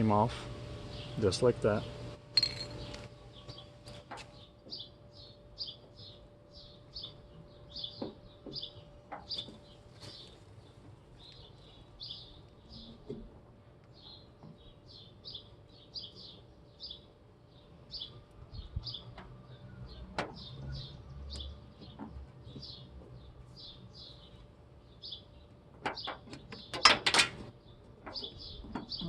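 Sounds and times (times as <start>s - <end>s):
small birds chirping: 0.0s - 29.0s
sharp clicks and knocks: 20.1s - 20.5s, 25.7s - 29.0s.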